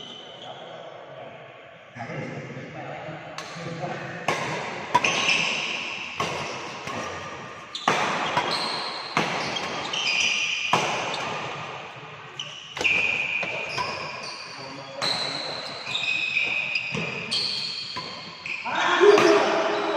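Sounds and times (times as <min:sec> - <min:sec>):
shuttlecock hits: 0:04.3 - 0:10.0
high squeaks: 0:04.9 - 0:11.5, 0:12.3 - 0:19.9.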